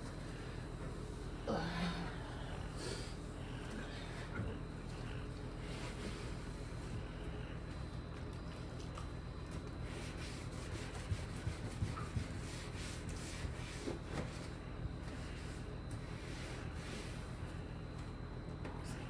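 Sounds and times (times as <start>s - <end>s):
steady low hum: 0.0s - 19.0s
rubbing and wiping surfaces: 9.8s - 17.4s.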